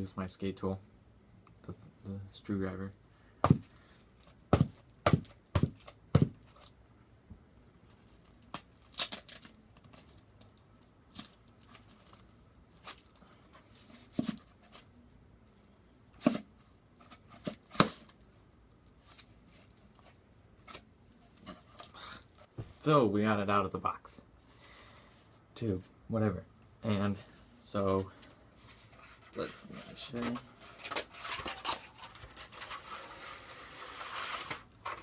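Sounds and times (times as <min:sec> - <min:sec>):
packaging tearing and crinkling: 0:08.1 - 0:13.2.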